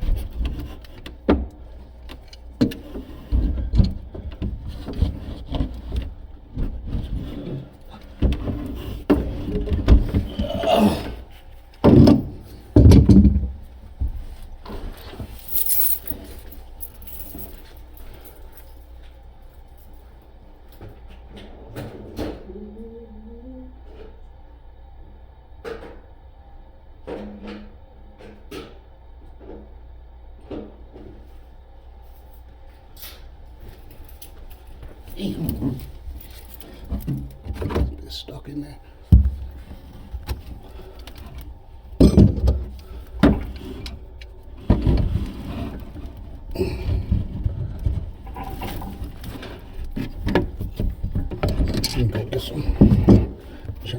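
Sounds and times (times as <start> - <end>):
low steady hum: 0.0 - 25.5, 29.3 - 53.9
knocks and clunks of tools: 11.8 - 14.9, 40.1 - 44.0, 46.8 - 53.9
metal clinks and knocks: 14.7 - 18.9.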